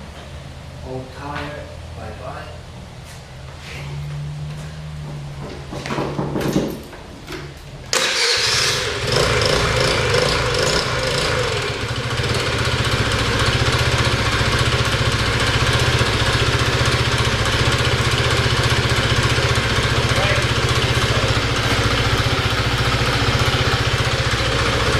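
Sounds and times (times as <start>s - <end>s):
scooter engine starting and idling: 5.0s - 24.9s.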